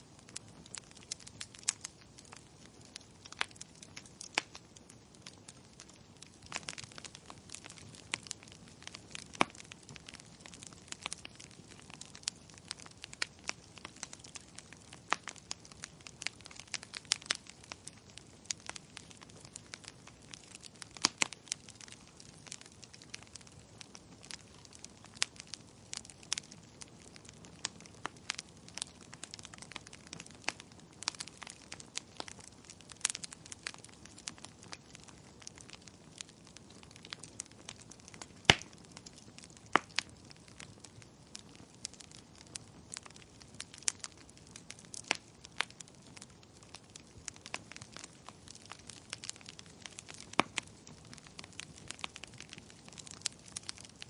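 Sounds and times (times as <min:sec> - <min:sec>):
wood fire crackling: 0:00.0 - 0:54.0
fire hissing: 0:00.2 - 0:16.9.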